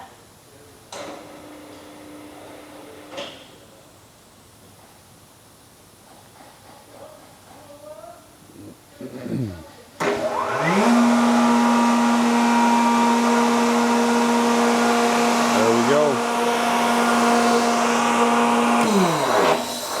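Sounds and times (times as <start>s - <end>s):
air compressor running: 10.0s - 20.0s.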